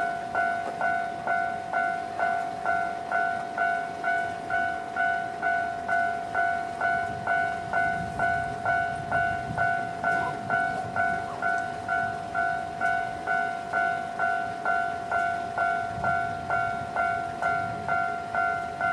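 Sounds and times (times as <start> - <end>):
passing train rumble: 0.0 - 18.9
two-tone crossing warning bell: 0.0 - 18.9.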